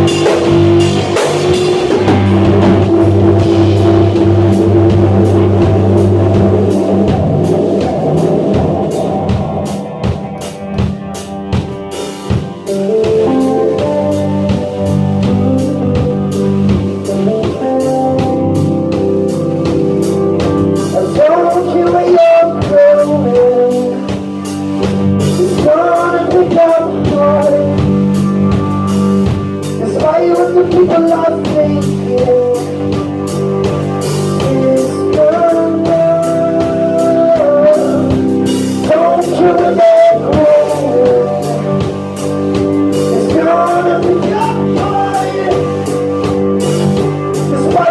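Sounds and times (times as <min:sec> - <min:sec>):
drum kit: 0:00.0 - 0:47.9
live band playing: 0:00.0 - 0:47.9
person singing: 0:20.8 - 0:24.6, 0:25.2 - 0:47.9.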